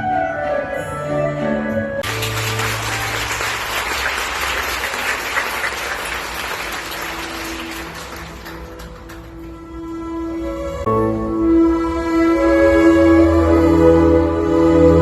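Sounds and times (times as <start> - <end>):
orchestral ballet music: 0.0 - 15.0
audience applause: 2.0 - 9.7.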